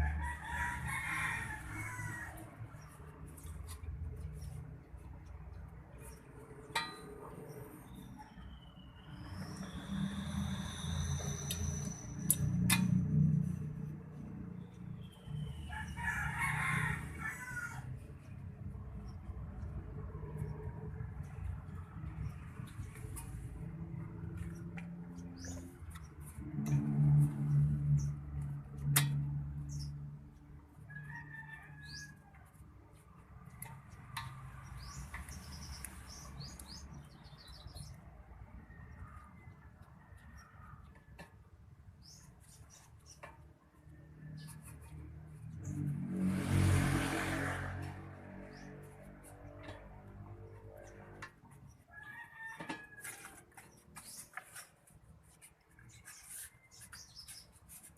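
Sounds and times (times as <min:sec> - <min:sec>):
high bird chirps and clicks: 0:11.2 - 0:13.0, 0:33.5 - 0:38.0
small birds chirping: 0:33.5 - 0:38.2, 0:55.4 - 0:57.9.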